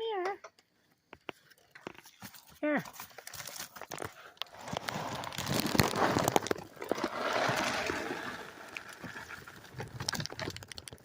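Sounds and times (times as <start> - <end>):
dry kibble poured and rattling: 3.1 - 11.0.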